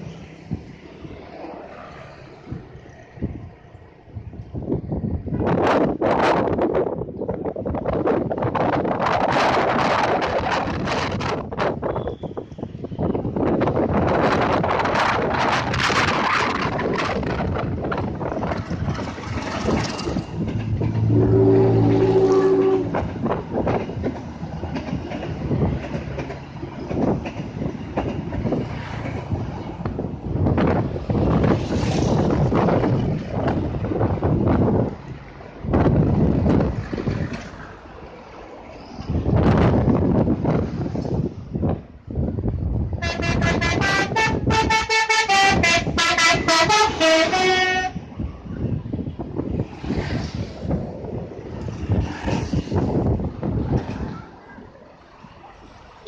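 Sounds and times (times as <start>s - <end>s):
train rumble: 0.0s - 56.0s
train wheels clattering over rail joints: 13.6s - 21.1s, 22.9s - 35.2s
bus horn playing a tune: 21.0s - 23.0s, 43.0s - 48.0s.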